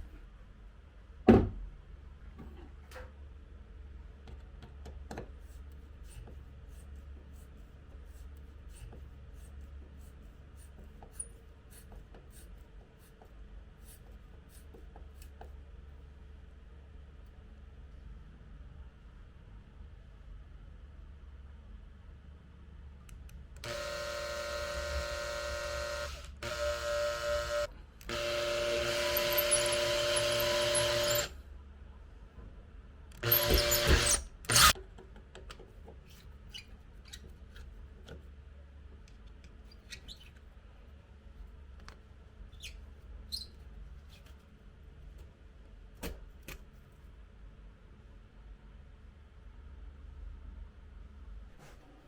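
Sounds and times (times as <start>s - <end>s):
electric drill whining: 23.6s - 31.3s, 33.2s - 34.8s.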